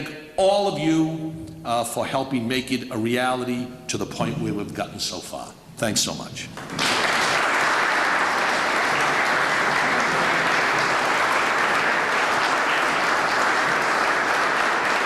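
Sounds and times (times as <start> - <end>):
audience applauding: 6.6 - 15.0.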